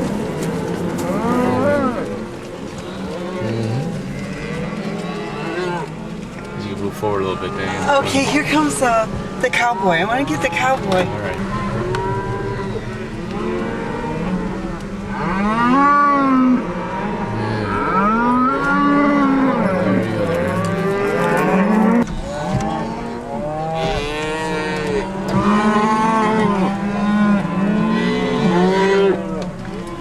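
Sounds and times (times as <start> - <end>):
cattle mooing and bawling: 0.0 - 30.0.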